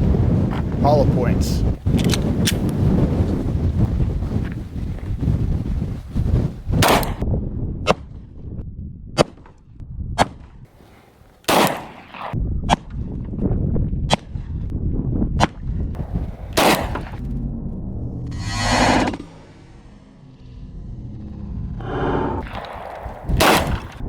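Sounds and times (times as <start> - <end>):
wind rumble: 0.0 - 24.0
pistol shots: 6.8 - 7.2, 11.4 - 12.3, 16.5 - 17.2, 22.5 - 24.0.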